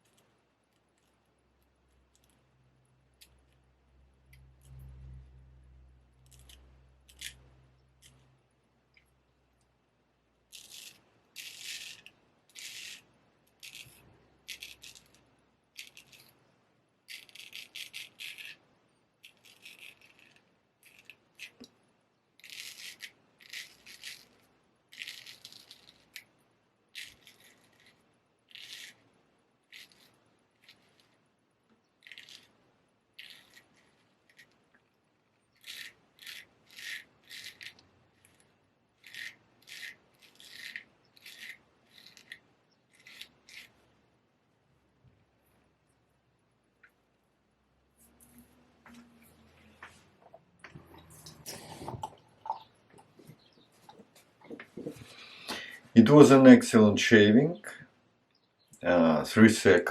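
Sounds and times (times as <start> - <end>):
straight razor scraping stubble: 10.5 - 16.4, 17.1 - 18.6, 19.2 - 21.7, 22.4 - 26.3, 26.9 - 29.0, 29.7 - 31.2, 32.0 - 32.6, 33.2 - 34.6, 35.5 - 43.8.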